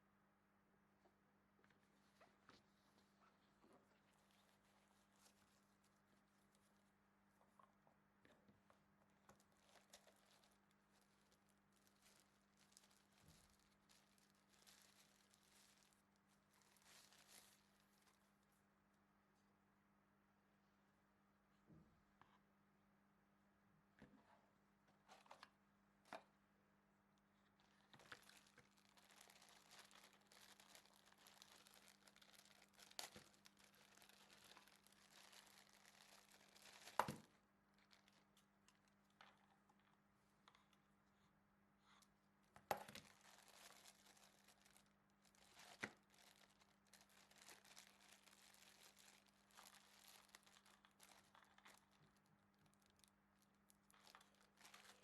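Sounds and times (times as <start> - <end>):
packaging rustling and crinkling: 2.0 - 6.9, 9.3 - 18.3, 27.6 - 39.4, 42.6 - 53.1, 53.7 - 55.0.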